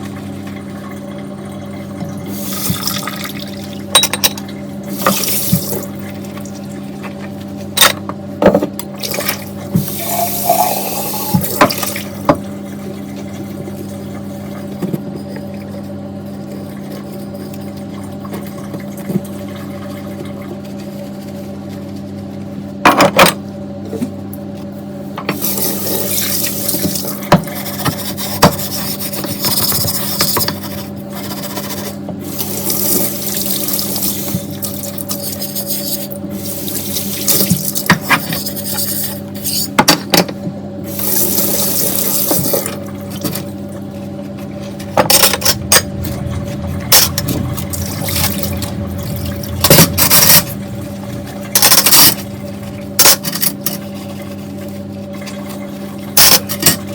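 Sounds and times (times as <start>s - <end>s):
steady low hum: 0.0s - 56.9s
tap water running into sink: 0.1s - 4.0s, 4.9s - 6.6s, 9.0s - 12.5s, 32.3s - 38.4s.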